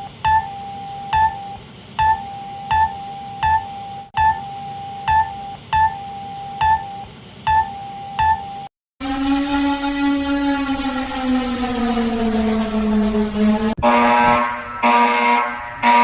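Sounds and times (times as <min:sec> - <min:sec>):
electronic alarm tone with beeps: 0:00.0 - 0:13.8
loud low siren tone: 0:09.0 - 0:16.0.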